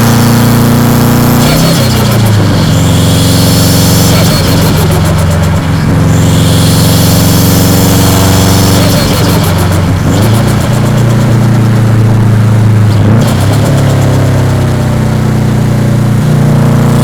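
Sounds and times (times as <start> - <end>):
car engine running at low revs: 0.0 - 17.0
hiss: 1.4 - 11.7.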